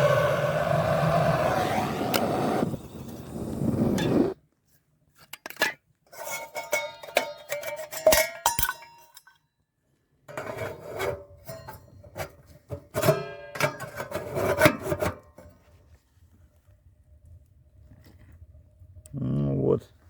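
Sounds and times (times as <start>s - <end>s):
metal clinking and scraping: 5.3s - 9.4s.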